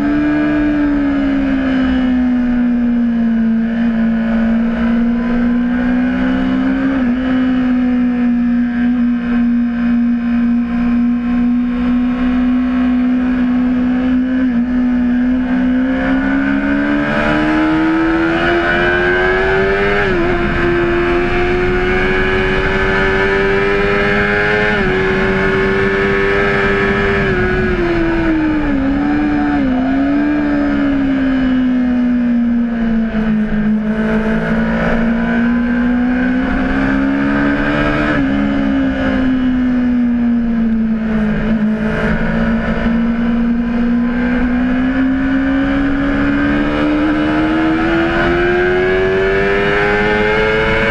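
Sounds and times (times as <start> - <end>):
motorcycle engine running hard: 0.0 - 50.9.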